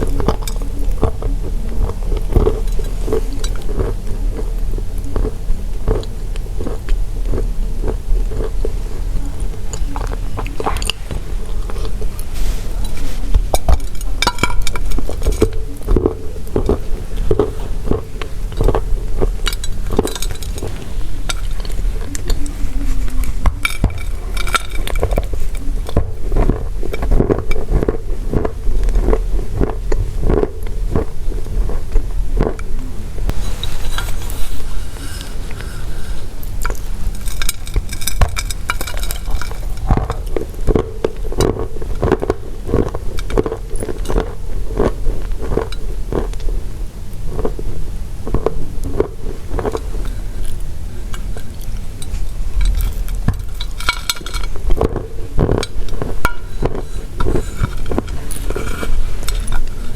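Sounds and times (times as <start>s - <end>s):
crunching and chewing chalk: 0.0s - 59.9s
steady low hum: 0.0s - 59.9s
chalk tiles crunching: 9.6s - 16.0s.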